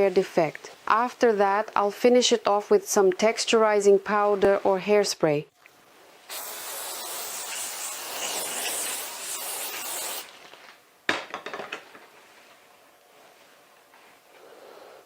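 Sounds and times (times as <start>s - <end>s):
aerosol spray hissing: 6.3s - 10.3s.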